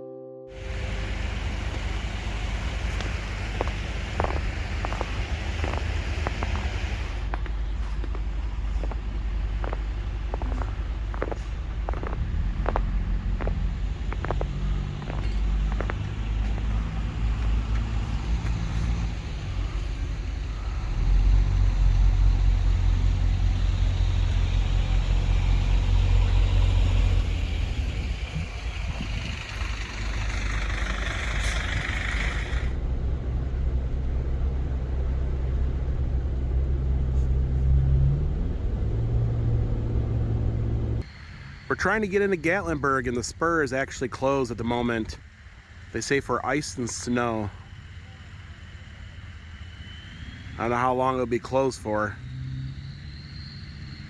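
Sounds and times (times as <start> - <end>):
car engine and road rumble: 0.6 - 54.0
hiss: 18.6 - 32.8.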